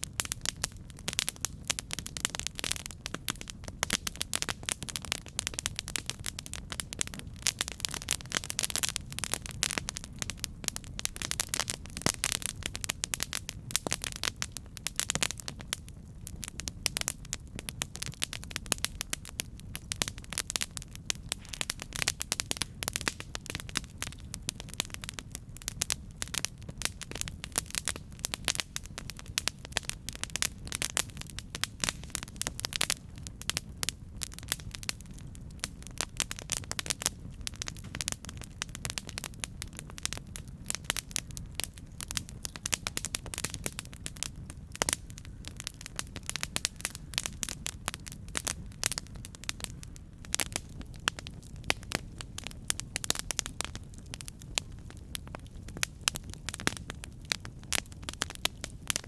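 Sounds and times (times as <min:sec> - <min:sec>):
low rumble of flame: 0:00.0 - 0:59.0
wood crackling and popping: 0:00.0 - 0:59.0.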